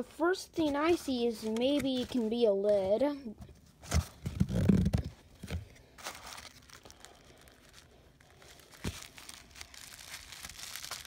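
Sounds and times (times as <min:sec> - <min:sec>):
packing wrap rustling: 0:03.9 - 0:11.0.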